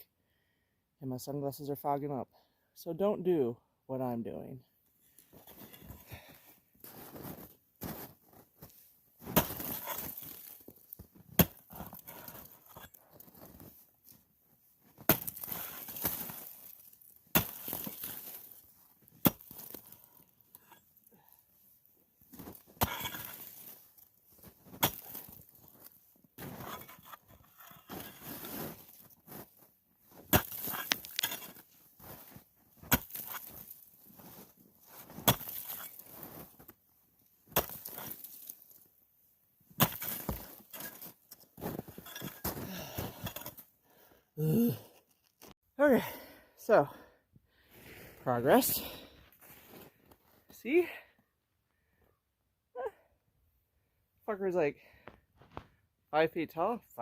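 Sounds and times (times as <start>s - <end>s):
ice crunching: 5.1s - 14.2s, 14.8s - 38.9s, 39.7s - 43.7s
axe chopping into ice: 9.2s - 10.6s, 11.3s - 12.9s, 15.0s - 18.5s, 19.2s - 19.9s, 22.4s - 23.7s, 24.6s - 25.8s, 26.4s - 29.4s, 30.1s - 34.4s, 35.2s - 36.3s, 37.5s - 38.6s, 39.8s - 43.6s.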